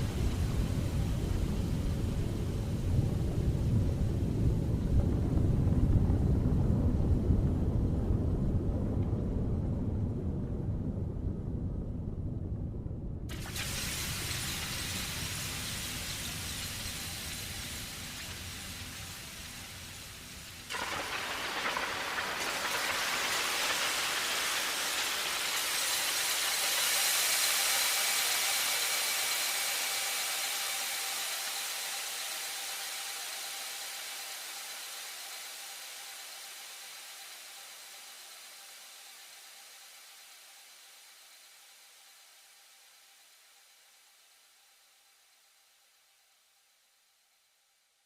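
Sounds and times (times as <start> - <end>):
low rumbling horror drone: 0.1 - 13.3
electronic rushing hiss: 13.3 - 43.2.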